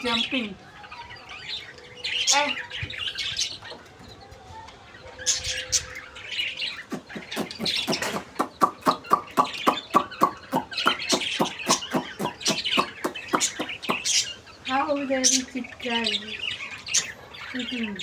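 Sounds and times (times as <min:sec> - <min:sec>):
budgerigars and chicks chirping: 0:00.0 - 0:18.0
rapid short repeated calls: 0:06.8 - 0:14.4.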